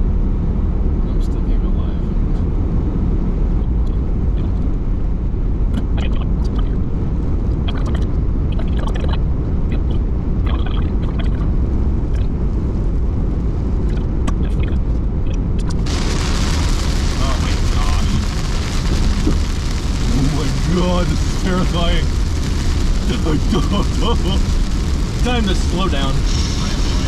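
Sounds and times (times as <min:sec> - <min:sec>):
car road and engine rumble: 0:00.0 - 0:27.0
heavy rain hitting car: 0:15.8 - 0:27.0.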